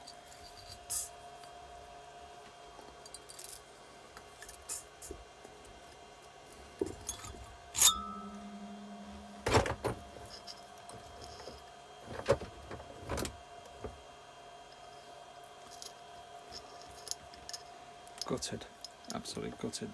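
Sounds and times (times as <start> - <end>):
metal tools clinking: 7.0 - 11.6.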